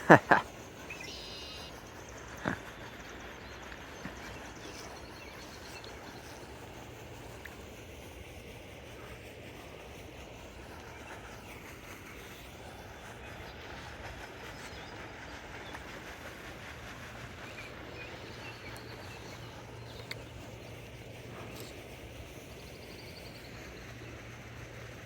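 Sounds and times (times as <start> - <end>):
faint ticks: 18.6 - 20.5.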